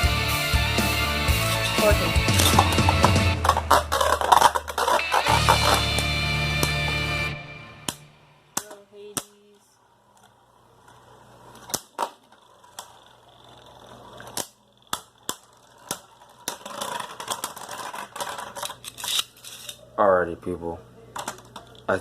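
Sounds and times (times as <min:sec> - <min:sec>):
hard objects clicking and knocking: 0:02.2 - 0:06.9.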